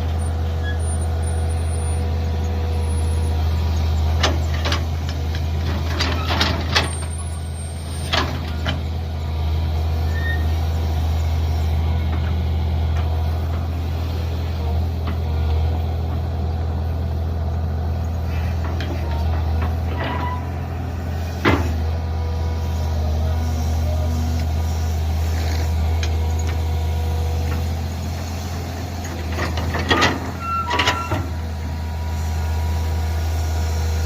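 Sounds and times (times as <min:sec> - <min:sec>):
excavator engine running: 0:00.0 - 0:34.0
digging knocks and clanks: 0:04.1 - 0:07.1, 0:18.5 - 0:20.5, 0:21.3 - 0:21.9, 0:28.6 - 0:31.3.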